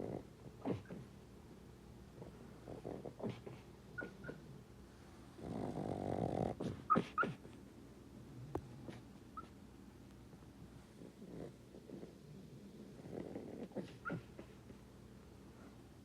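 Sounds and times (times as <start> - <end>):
dog snoring: 0.0 - 1.1, 2.2 - 4.6, 5.4 - 7.4, 11.0 - 14.6
dog yipping and whimpering: 4.0 - 4.5, 6.9 - 7.4, 13.8 - 14.4.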